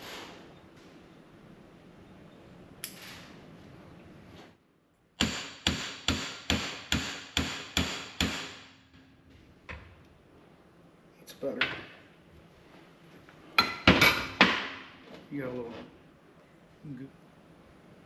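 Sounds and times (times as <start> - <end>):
hammer striking metal: 5.2 - 8.8.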